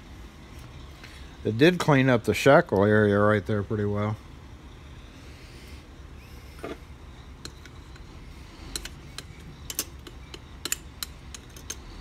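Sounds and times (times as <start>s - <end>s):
padlock metal clicks and taps: 8.8s - 11.8s.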